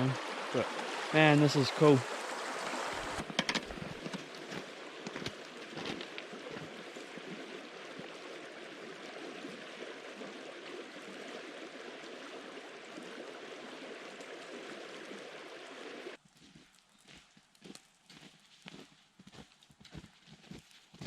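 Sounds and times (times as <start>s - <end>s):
river water rushing: 0.0s - 16.2s.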